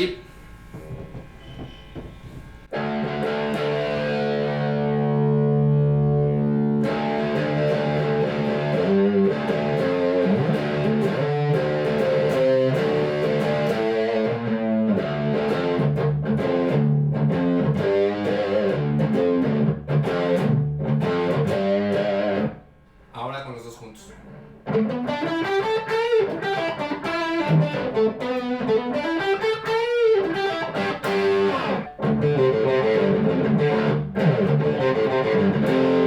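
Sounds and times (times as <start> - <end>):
distorted electric guitar: 0.0 - 22.7, 24.2 - 36.0.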